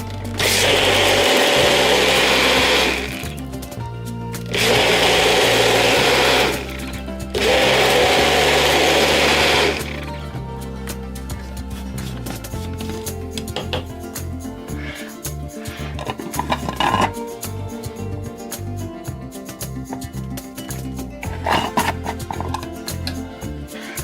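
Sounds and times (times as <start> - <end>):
background music: 0.0 - 24.0
small electric motor whirring: 0.4 - 3.4, 4.5 - 10.3.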